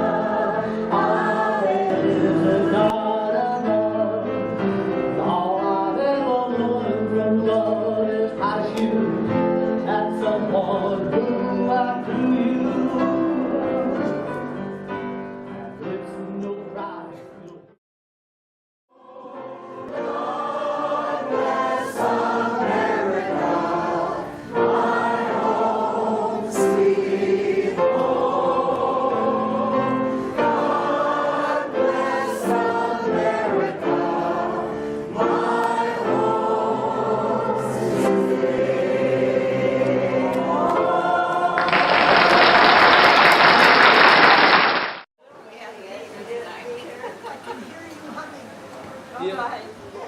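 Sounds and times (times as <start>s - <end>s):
choir singing held chords: 0.0s - 14.1s, 18.9s - 44.5s.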